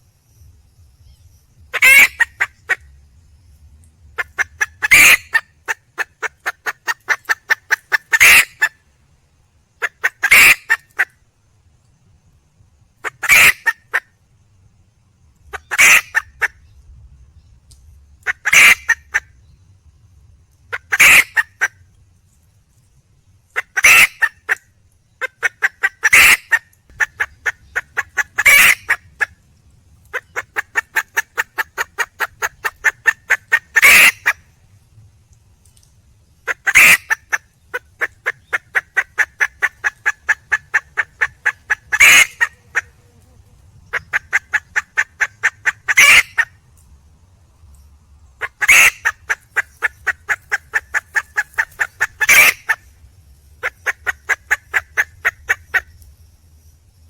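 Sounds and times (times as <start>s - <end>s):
hen clucking: 1.7s - 3.0s, 4.2s - 8.7s, 9.8s - 11.1s, 13.0s - 14.0s, 15.5s - 16.5s, 18.2s - 19.2s, 20.7s - 21.7s, 23.6s - 24.6s, 25.2s - 29.4s, 30.1s - 34.4s, 36.5s - 46.5s, 48.4s - 52.8s, 53.6s - 55.9s.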